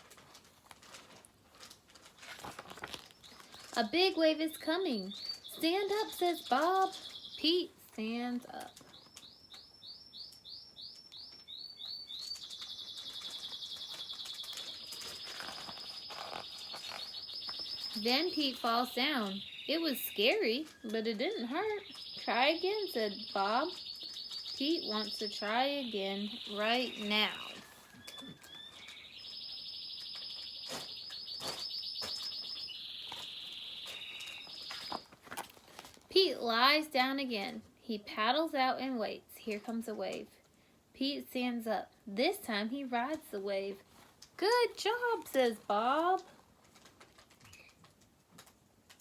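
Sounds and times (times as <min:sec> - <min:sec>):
songbird chirping and trilling: 0:02.8 - 0:35.1.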